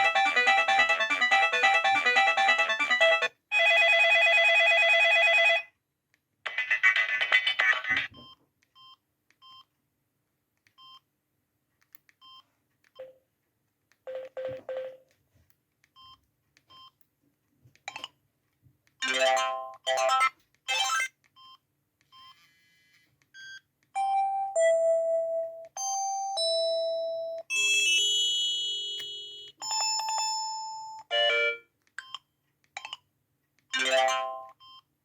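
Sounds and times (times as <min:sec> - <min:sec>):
phone ringtone melody: 0:00.0 - 0:05.6, 0:33.8 - 0:34.6.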